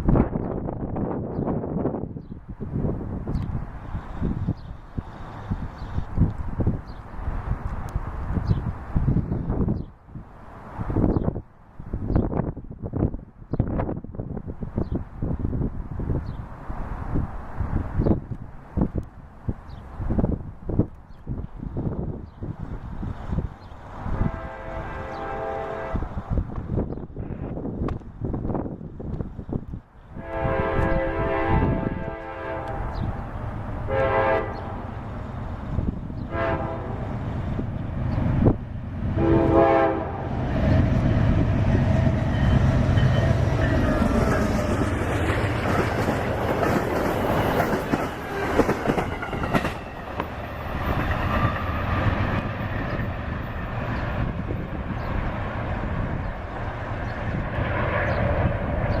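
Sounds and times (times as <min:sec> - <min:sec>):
train rumbling past: 0:00.0 - 0:59.0
locomotive horn honking: 0:24.1 - 0:26.1, 0:30.2 - 0:33.2, 0:33.8 - 0:35.0, 0:36.2 - 0:37.1, 0:39.1 - 0:40.4.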